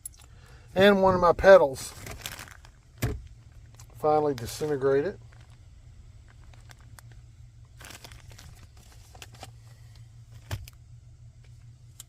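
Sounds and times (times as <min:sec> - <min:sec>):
small clicks of parts: 0:00.0 - 0:00.4
steady low hum: 0:00.0 - 0:12.0
packaging rustling: 0:01.8 - 0:09.6.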